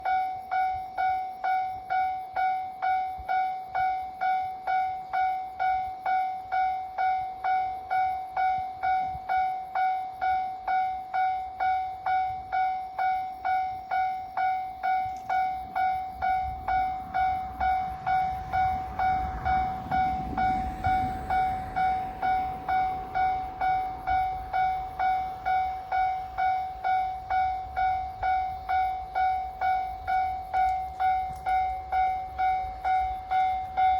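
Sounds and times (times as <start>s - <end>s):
level crossing warning bell: 0.0s - 33.9s
low rumble: 15.1s - 33.9s.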